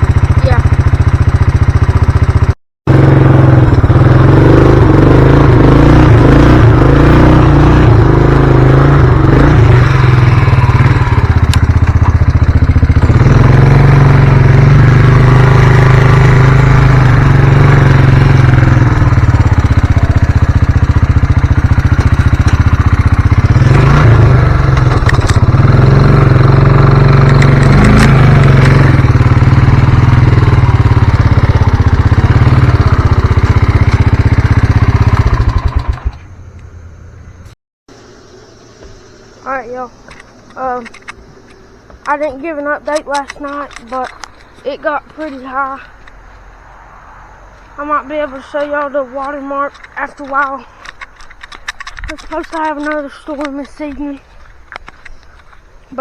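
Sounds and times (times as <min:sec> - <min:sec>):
engine revving: 0:00.0 - 0:36.5.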